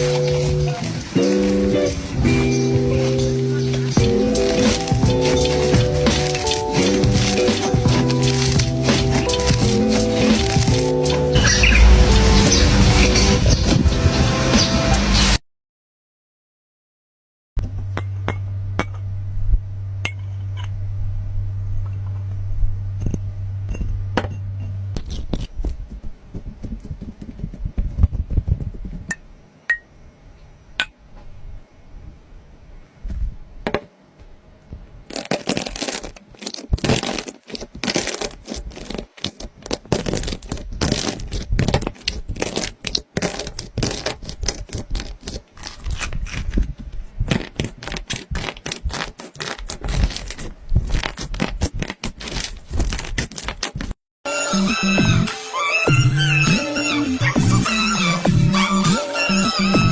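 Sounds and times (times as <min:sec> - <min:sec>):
low steady hum: 0:17.6 - 0:37.6.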